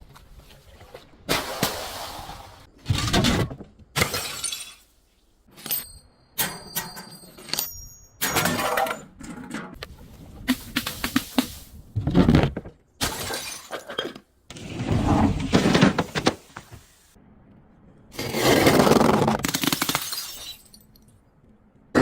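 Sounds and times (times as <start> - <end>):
glass bottles shattering: 4.0 - 4.9, 5.7 - 9.1, 13.0 - 14.2, 19.4 - 21.0.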